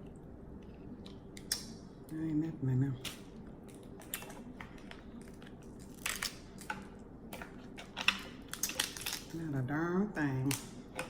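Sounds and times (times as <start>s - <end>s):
crab shells cracking: 0.9s - 1.8s, 3.0s - 9.4s.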